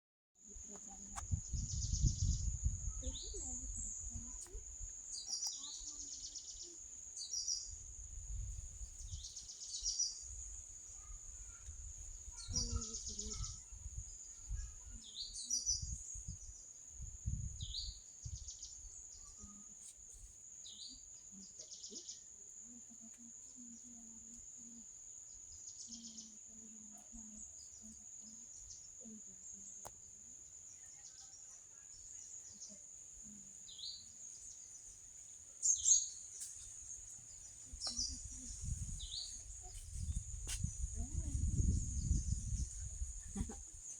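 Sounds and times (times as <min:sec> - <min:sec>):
birds chirping: 0:00.6 - 0:16.7, 0:35.6 - 0:43.9.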